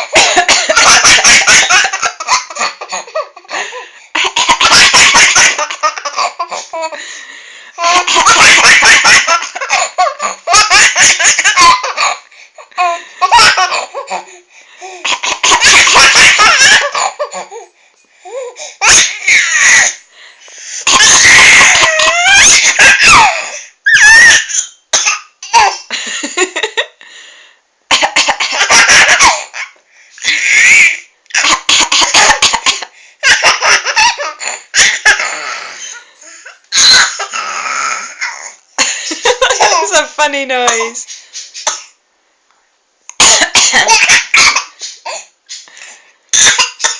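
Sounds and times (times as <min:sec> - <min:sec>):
woman coughing: 0:00.0 - 0:03.0, 0:27.9 - 0:29.5, 0:31.4 - 0:32.9, 0:39.3 - 0:41.1, 0:43.2 - 0:45.3, 0:46.4 - 0:46.9
child laughing: 0:00.0 - 0:07.0, 0:07.8 - 0:12.0, 0:15.4 - 0:17.3, 0:20.9 - 0:24.5, 0:28.6 - 0:36.0, 0:36.7 - 0:40.1, 0:43.5 - 0:44.6.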